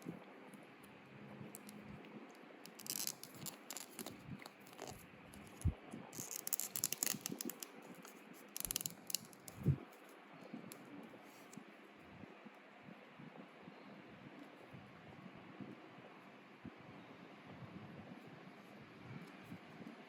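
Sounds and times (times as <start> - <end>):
small clicks and light knocks: 2.7 - 10.1.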